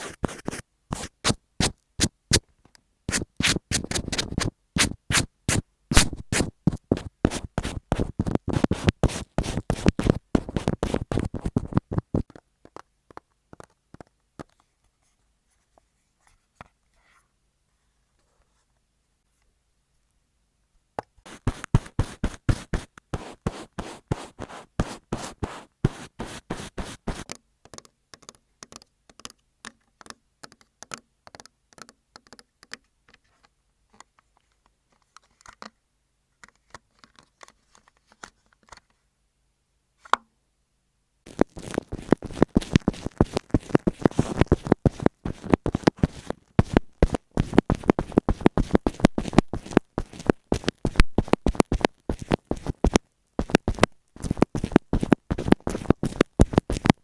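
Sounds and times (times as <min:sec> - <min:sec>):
pen scratching on paper: 0:00.0 - 0:02.1, 0:03.1 - 0:12.4, 0:21.3 - 0:27.4, 0:41.3 - 0:57.0.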